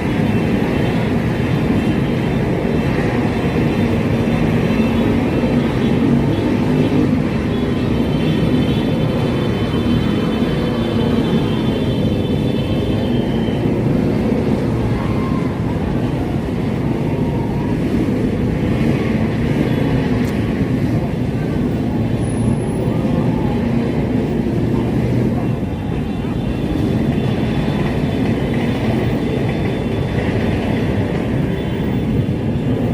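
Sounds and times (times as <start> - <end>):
street traffic rumble: 0.0 - 32.9.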